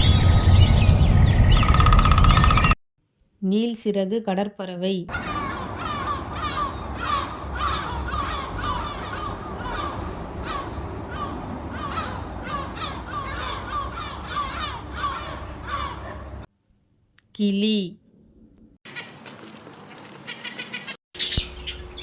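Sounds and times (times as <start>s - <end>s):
seagulls calling: 5.1s - 16.5s, 21.2s - 22.0s.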